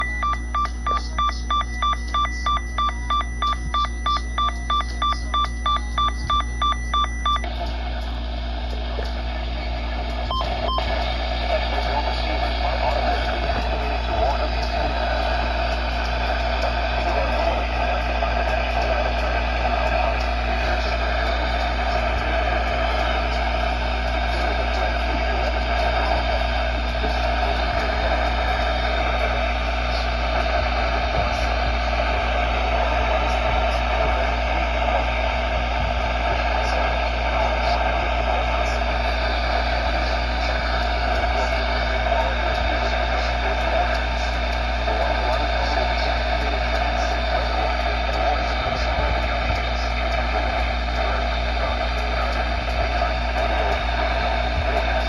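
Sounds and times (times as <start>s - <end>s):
rapid electronic alert tones: 0.0s - 7.5s, 10.3s - 11.1s
low hum: 0.0s - 55.0s
radio hiss: 0.0s - 55.0s.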